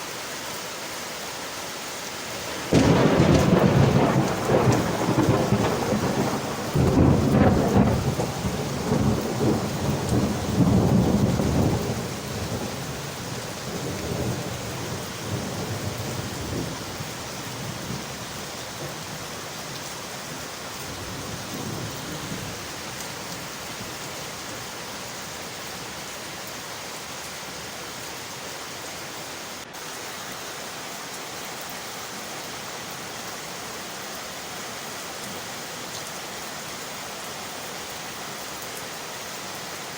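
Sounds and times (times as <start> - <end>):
steady rain: 0.0 - 39.9
thunder rumbling: 2.4 - 19.8.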